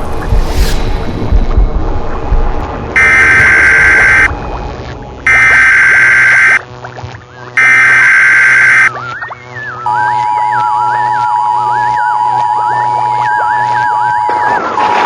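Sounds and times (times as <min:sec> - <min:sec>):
low rumble: 0:00.0 - 0:07.3
loud buzzing alarm: 0:03.0 - 0:04.5, 0:05.2 - 0:06.7, 0:07.4 - 0:15.0.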